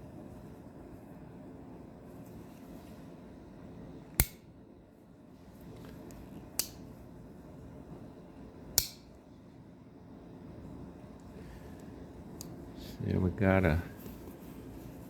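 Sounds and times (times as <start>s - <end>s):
pocketknife blades snapping shut: 4.2s - 4.4s, 6.6s - 6.8s, 8.8s - 9.1s.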